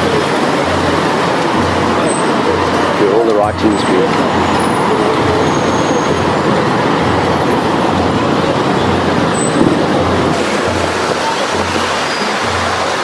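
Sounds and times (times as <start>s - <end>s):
outdoor background noise: 0.0s - 13.0s.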